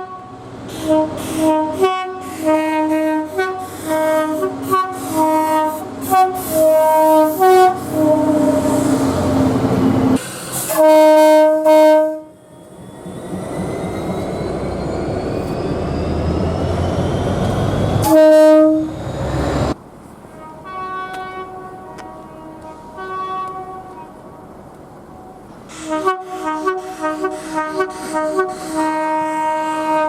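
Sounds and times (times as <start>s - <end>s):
train horn blasts: 0.0s - 9.4s, 10.6s - 12.4s, 18.0s - 19.0s, 20.3s - 24.2s, 25.2s - 30.0s
faint distant train horn: 0.0s - 12.4s, 18.0s - 19.1s, 20.3s - 24.3s, 25.1s - 30.0s
passing train rumble: 0.0s - 30.0s.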